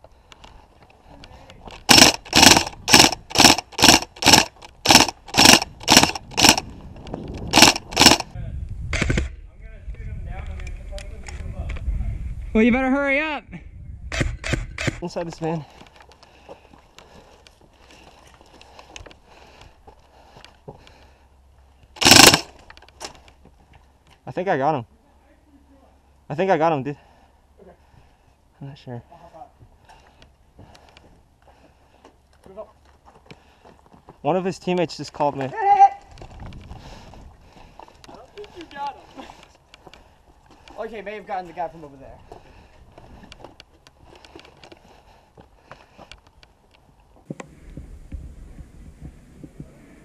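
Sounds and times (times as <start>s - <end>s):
airsoft rifle full-auto bursts: 1.8s - 6.6s, 7.5s - 8.3s, 22.0s - 22.6s.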